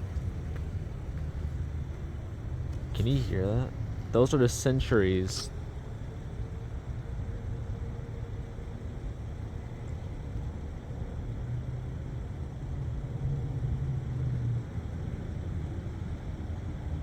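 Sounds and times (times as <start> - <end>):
distant warning sirens: 0.0 - 13.5
low outdoor rumble: 0.0 - 17.0.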